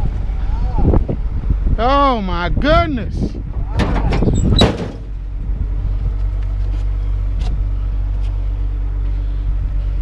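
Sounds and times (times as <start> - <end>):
vehicle engine idling: 3.2 - 10.0.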